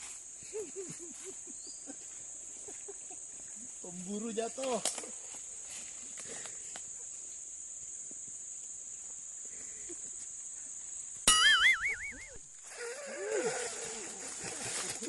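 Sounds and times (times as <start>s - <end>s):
high-pitched insect drone: 7.8s - 15.0s
loud warbling call: 11.3s - 12.4s.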